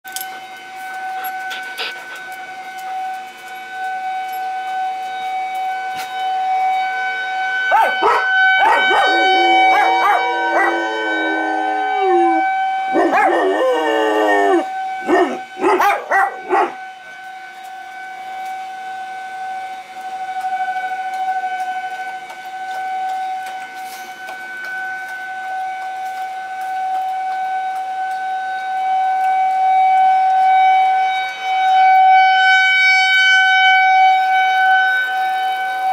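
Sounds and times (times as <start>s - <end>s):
warning siren steady tone: 0.1s - 35.9s
dog howling: 7.7s - 16.8s
dog yipping and barking: 15.6s - 16.4s.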